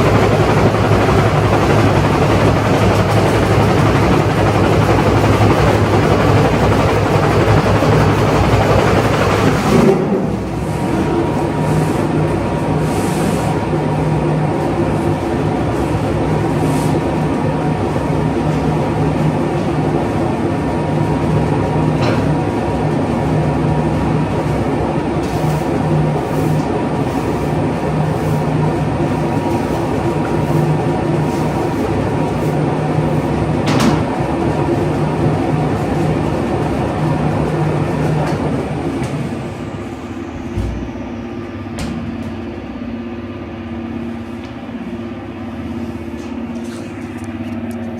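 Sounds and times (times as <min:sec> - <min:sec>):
fluttering motor hum: 0:00.0 - 0:11.6
carpet-beating machine rumbling: 0:00.0 - 0:12.8.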